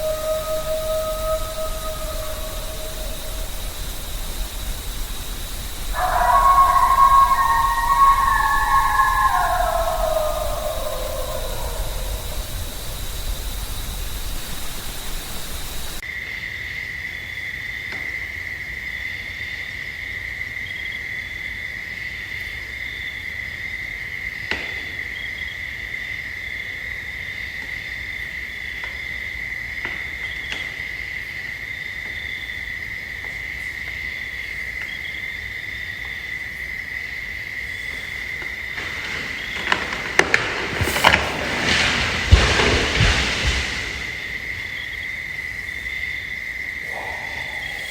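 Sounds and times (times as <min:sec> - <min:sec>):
hiss: 0:00.0 - 0:16.0, 0:37.7 - 0:47.9
crickets trilling: 0:00.0 - 0:47.9.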